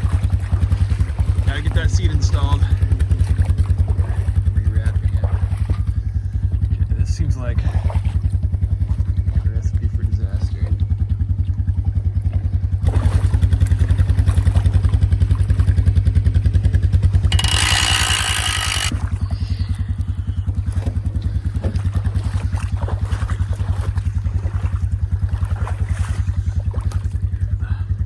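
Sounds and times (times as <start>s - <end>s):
atv engine idling: 0.0s - 28.0s.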